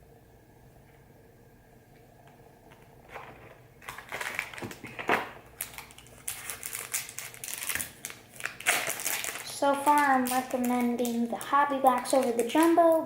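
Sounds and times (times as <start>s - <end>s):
card pack wrapper crinkling: 3.1s - 13.0s.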